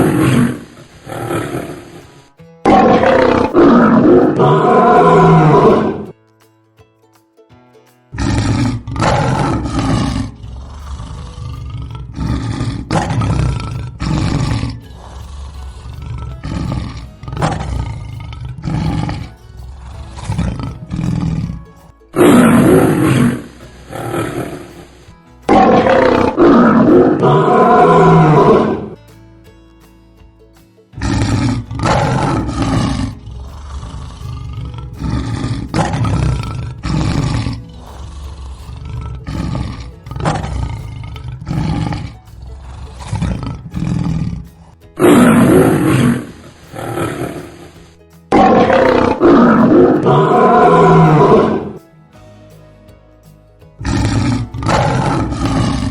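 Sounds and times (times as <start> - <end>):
lion grunts: 0.0 - 2.1, 8.2 - 21.6, 22.2 - 24.9, 25.5 - 29.0, 31.0 - 51.8, 53.8 - 55.9
lions roaring: 0.0 - 6.2, 8.2 - 29.0, 31.0 - 51.9, 53.8 - 55.9.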